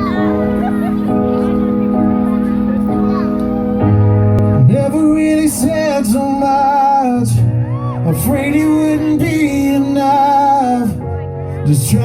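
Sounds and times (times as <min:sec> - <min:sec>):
rock band playing: 0:00.0 - 0:10.2
man singing: 0:04.5 - 0:12.0.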